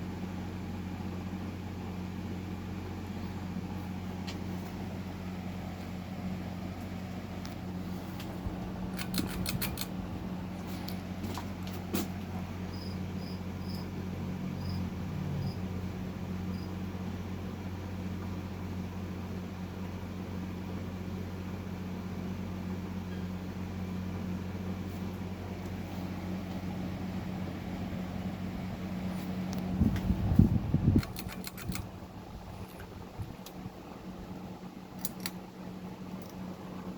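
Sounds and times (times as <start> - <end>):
ceiling fan motor humming: 0.0 - 36.9
sharp clicks: 8.9 - 10.0, 31.0 - 31.9, 35.0 - 35.4.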